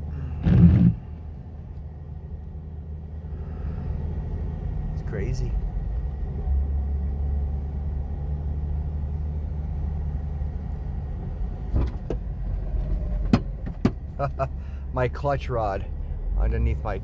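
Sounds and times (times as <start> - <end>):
engine and drivetrain rumble: 0.0 - 17.0
sharp clicks and knocks: 13.2 - 14.1.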